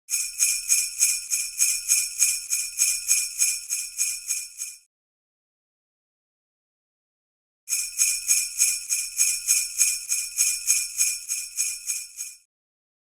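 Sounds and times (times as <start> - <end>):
jingle bells shaken: 7.9 - 12.4.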